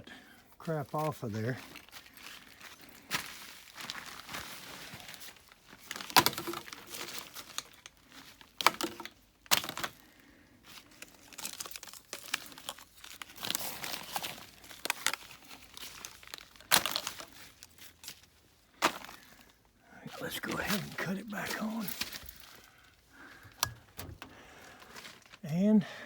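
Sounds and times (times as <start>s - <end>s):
material crinkling and tearing: 3.8s - 10.0s, 10.8s - 19.5s
sharp clicks or knocks: 23.4s - 24.4s.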